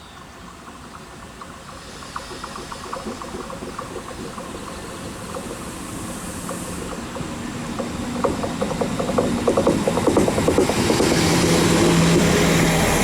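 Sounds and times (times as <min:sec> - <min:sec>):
train wheels clicking over rails: 0:00.0 - 0:13.0.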